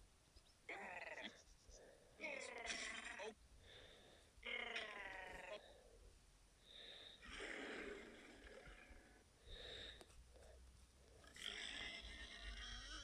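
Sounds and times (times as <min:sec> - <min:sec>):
pitched creature call: 0:11.4 - 0:13.0.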